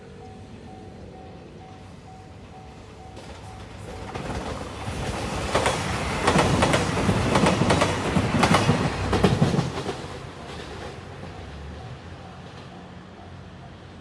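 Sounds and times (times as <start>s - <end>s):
train running rumble: 0.2s - 14.0s
train wheels clicking over rail joints: 3.0s - 13.3s.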